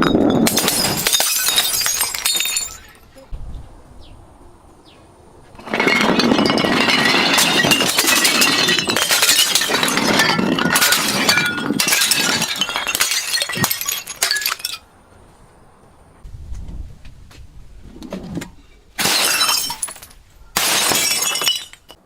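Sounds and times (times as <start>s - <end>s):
glass bottles being crushed: 0.0s - 3.0s, 5.6s - 14.8s, 19.0s - 22.0s.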